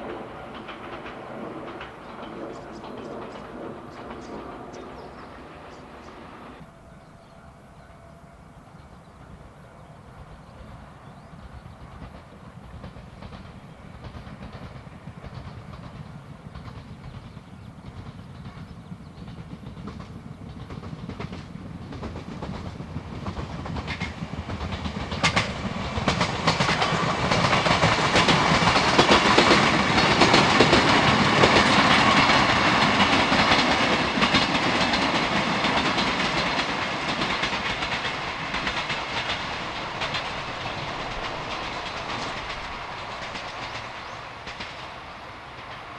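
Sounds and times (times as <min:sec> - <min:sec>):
train wheels clacking on rail joints: 0:00.0 - 0:06.4, 0:07.1 - 0:45.9
electric train running past: 0:00.0 - 0:45.9.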